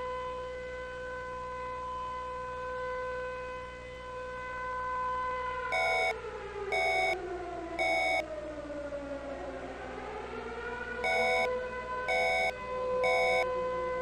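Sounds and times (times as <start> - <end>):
warning siren wailing: 0.0 - 14.0
short electronic beeps: 5.7 - 6.1, 6.8 - 7.2, 7.8 - 8.2, 11.0 - 11.5, 12.1 - 13.4.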